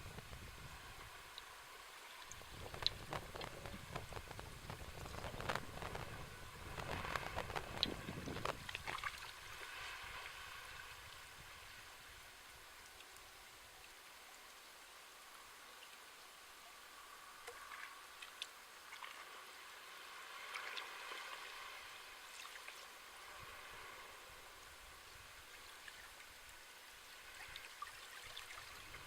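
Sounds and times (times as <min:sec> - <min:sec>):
small waves washing on shore: 0:00.0 - 0:29.0
small crackling ticks: 0:02.2 - 0:09.1, 0:17.4 - 0:19.2.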